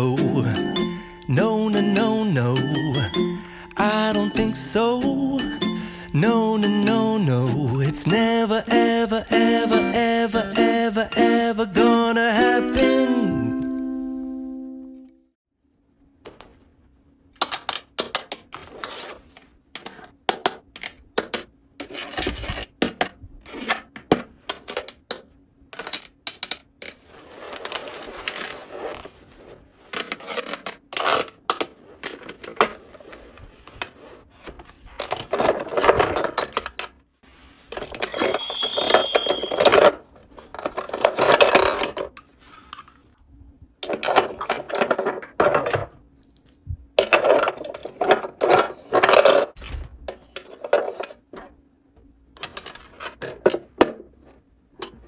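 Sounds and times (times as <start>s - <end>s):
plastic toy pieces clicking: 25.8s - 26.7s
rustling and scraping: 26.8s - 38.0s.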